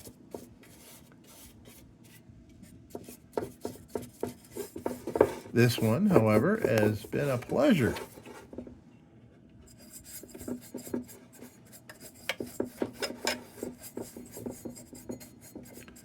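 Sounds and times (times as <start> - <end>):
hand scraping on metal: 2.9 - 8.5, 9.7 - 16.0.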